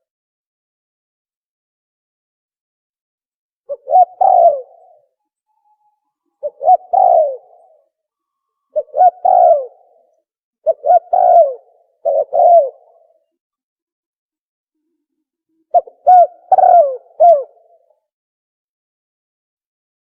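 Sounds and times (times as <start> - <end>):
dove cooing: 3.7 - 5.2, 6.4 - 7.9, 8.7 - 13.2, 15.7 - 17.9.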